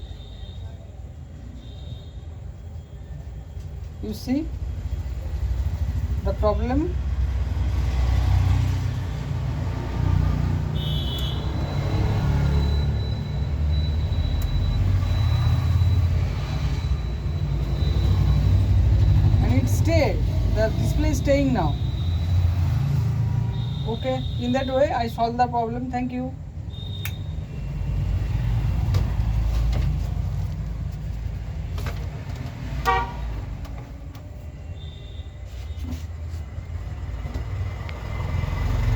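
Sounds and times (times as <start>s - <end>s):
road traffic rumbling: 3.8s - 38.9s
vehicle horn toot: 10.8s - 11.7s, 32.8s - 33.4s.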